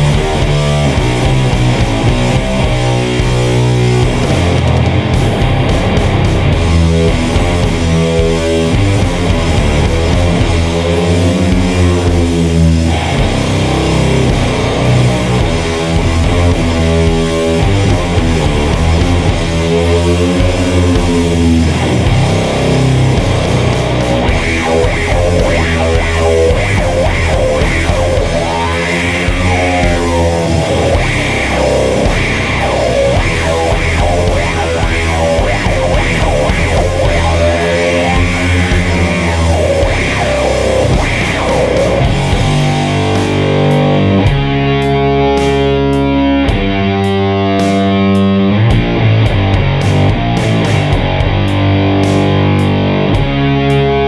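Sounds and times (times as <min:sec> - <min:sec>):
distorted electric guitar riffs: 0:00.0 - 0:54.0.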